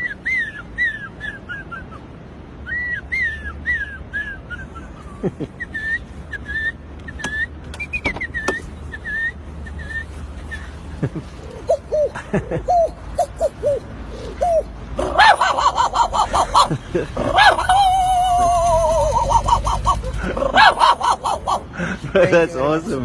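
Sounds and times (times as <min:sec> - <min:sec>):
man whistling birdsong imitation: 0:02.6 - 0:04.9, 0:05.6 - 0:10.8.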